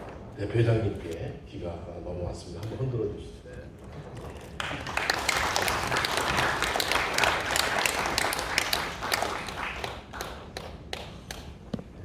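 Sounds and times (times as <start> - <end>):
audience applauding: 4.5 - 11.6.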